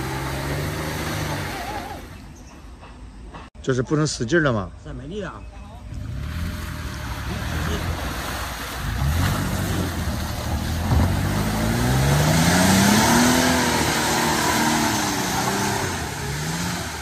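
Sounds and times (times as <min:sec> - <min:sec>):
car engine revving: 0:00.0 - 0:02.0, 0:05.9 - 0:17.0.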